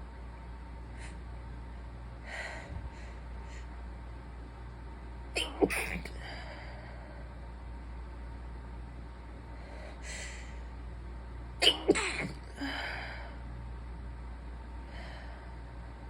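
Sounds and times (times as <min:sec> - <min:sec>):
stifled sneeze: 0:05.4 - 0:06.2, 0:11.6 - 0:12.5.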